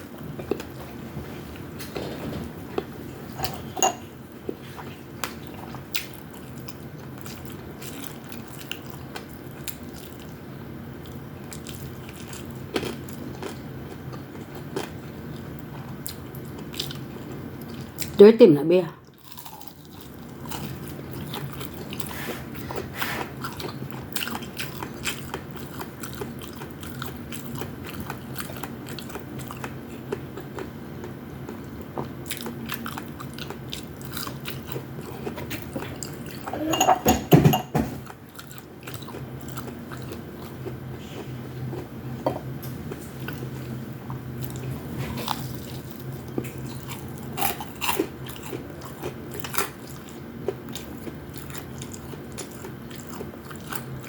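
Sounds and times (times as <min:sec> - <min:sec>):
steady low hum: 0:00.0 - 0:54.0
person chewing and crunching: 0:04.4 - 0:10.4, 0:11.0 - 0:18.2, 0:19.0 - 0:36.6, 0:38.0 - 0:54.0.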